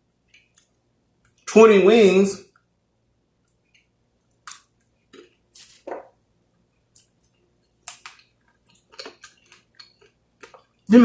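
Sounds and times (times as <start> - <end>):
wet chewing and lip smacks: 0.3 - 1.4, 3.4 - 5.8, 6.8 - 10.9.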